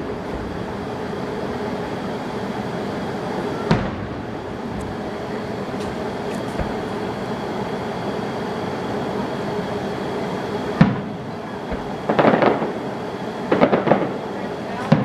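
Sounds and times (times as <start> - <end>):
background rumble: 0.0 - 14.4
firework crackles: 0.0 - 15.0
firework bang: 3.6 - 5.1, 5.7 - 7.1, 10.8 - 14.2.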